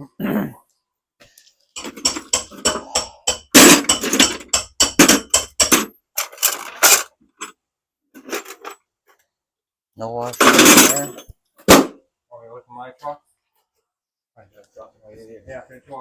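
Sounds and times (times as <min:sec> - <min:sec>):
metal hardware clinking: 0:01.8 - 0:07.1, 0:10.2 - 0:11.3.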